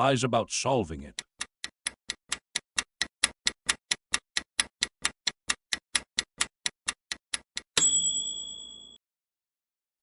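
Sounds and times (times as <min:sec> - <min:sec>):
clock-like ticking: 0:00.0 - 0:07.9.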